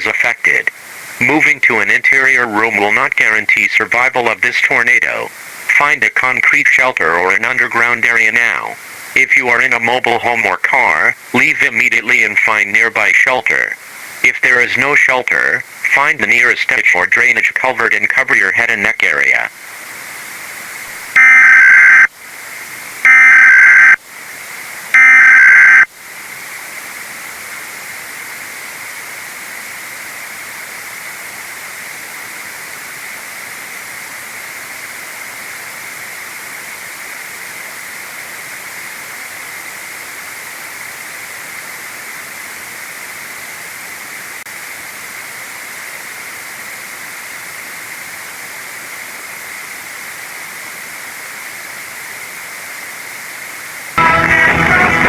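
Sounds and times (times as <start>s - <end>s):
static hiss: 0.0s - 55.0s
two-tone digital data bursts: 21.2s - 22.1s, 23.1s - 24.0s, 25.0s - 25.9s.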